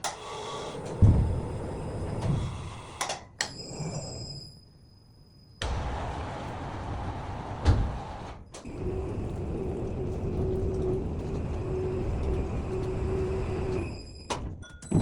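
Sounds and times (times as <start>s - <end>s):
motor drive with pulsing whine: 5.5s - 14.4s.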